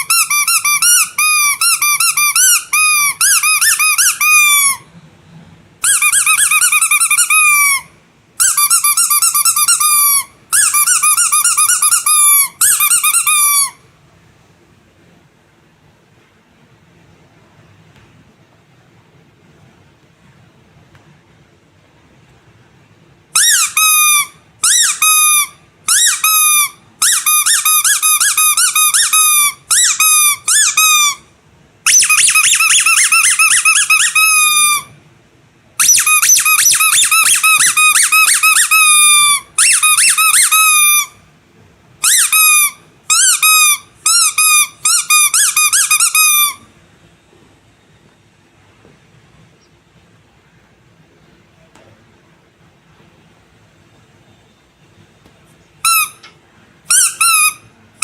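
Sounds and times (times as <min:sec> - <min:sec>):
squeaky rubber toy squeaks: 0:00.0 - 0:04.9, 0:05.8 - 0:13.8, 0:23.3 - 0:35.0, 0:35.8 - 0:41.2, 0:42.0 - 0:46.7, 0:55.8 - 0:56.3, 0:56.9 - 0:58.0.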